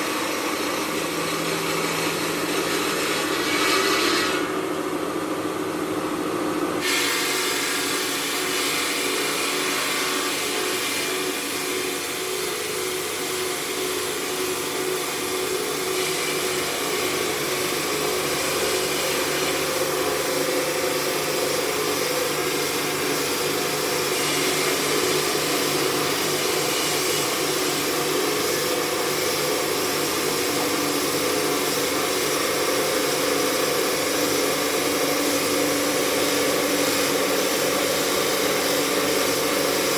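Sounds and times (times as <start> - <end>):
hiss of stone grinding: 1.4 - 4.6, 6.8 - 12.3, 14.1 - 39.9.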